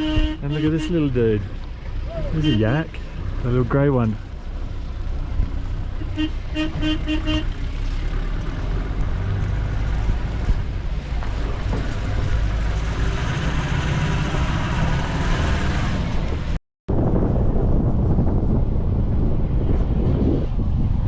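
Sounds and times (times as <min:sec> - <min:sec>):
wind noise on microphone: 0:00.0 - 0:00.8, 0:04.6 - 0:21.0
vehicle horn tooting: 0:00.0 - 0:00.9, 0:02.2 - 0:02.8, 0:06.0 - 0:07.6
engine rumble: 0:00.0 - 0:21.0.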